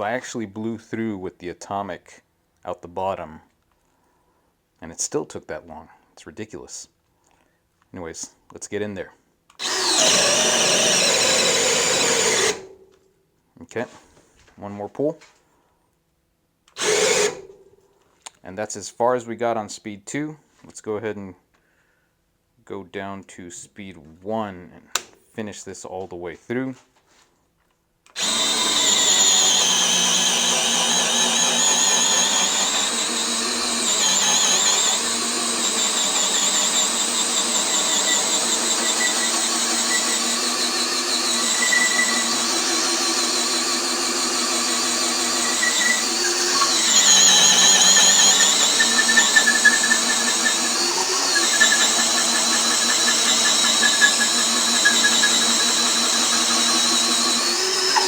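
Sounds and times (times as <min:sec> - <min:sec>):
drill boring through wood: 0:09.6 - 0:12.7, 0:16.8 - 0:17.5, 0:28.1 - 0:58.0.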